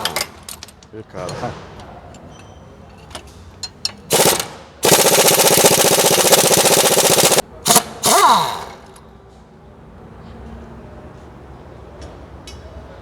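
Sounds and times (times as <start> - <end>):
impact wrench hammering: 4.1 - 9.0.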